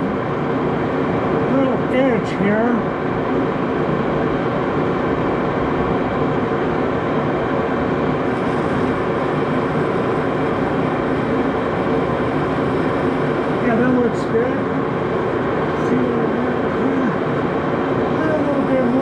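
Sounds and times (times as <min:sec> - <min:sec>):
lathe running: 0:08.1 - 0:19.0.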